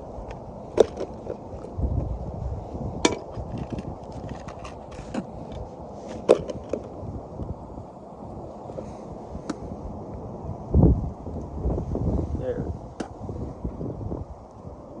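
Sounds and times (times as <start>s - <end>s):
wind rumble on microphone: 0.0s - 15.0s
fishing tackle rustling and ticking: 3.1s - 7.0s.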